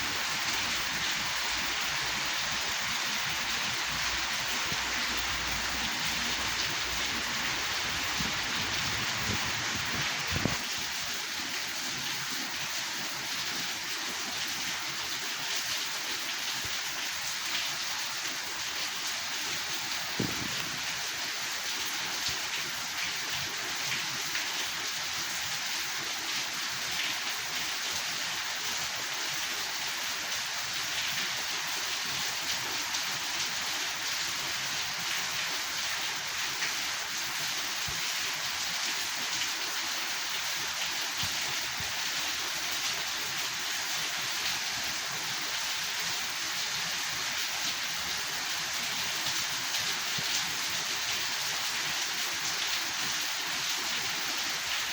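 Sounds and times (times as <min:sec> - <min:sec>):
steady rain hiss: 0:00.0 - 0:54.9
faint raindrop patters: 0:19.9 - 0:21.5.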